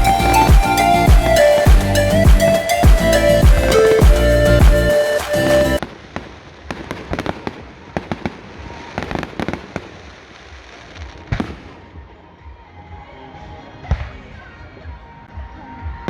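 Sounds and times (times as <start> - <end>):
music: 0.0 - 5.8, 11.7 - 16.0
fireworks bangs and crackles: 5.8 - 12.2.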